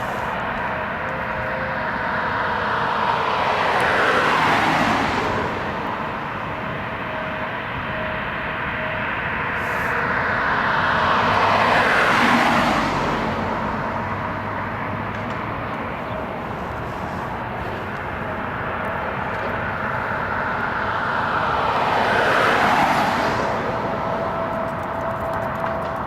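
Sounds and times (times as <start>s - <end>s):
vehicles passing: 0.0s - 26.0s.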